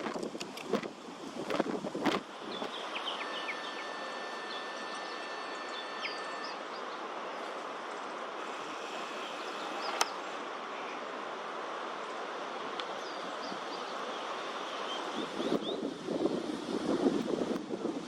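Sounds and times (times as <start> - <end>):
wind buffeting microphone: 0.0 - 3.0, 15.0 - 18.0
faint high chirps: 2.5 - 7.5
sharp click: 9.8 - 10.2.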